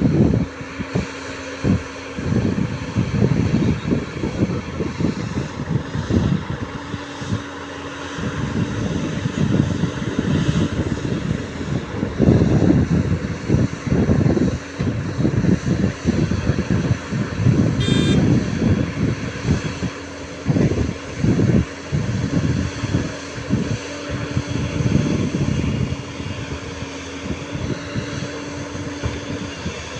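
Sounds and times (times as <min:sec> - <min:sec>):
diesel engine running: 0:00.0 - 0:29.9
wind buffeting microphone: 0:00.0 - 0:29.9
high beep: 0:17.8 - 0:18.2.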